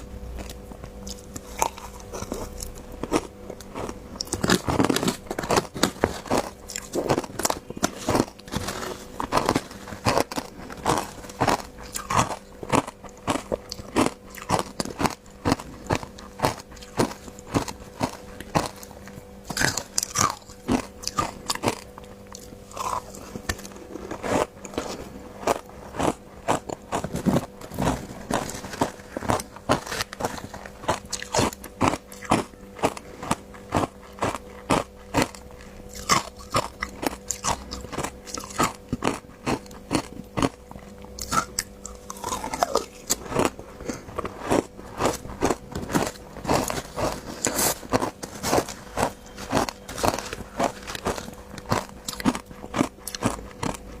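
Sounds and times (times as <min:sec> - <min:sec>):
ice being crunched: 0:04.2 - 0:13.4, 0:44.4 - 0:53.8.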